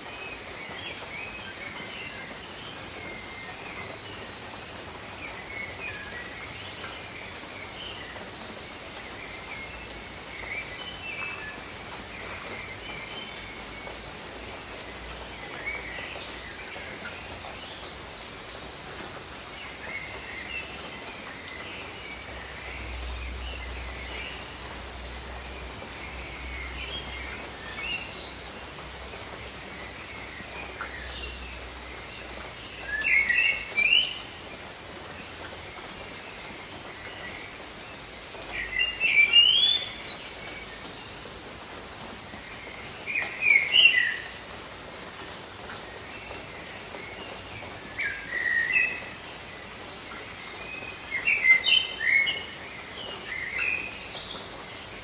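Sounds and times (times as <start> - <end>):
gentle rain: 0.0 - 55.0
songbird singing: 0.0 - 55.0.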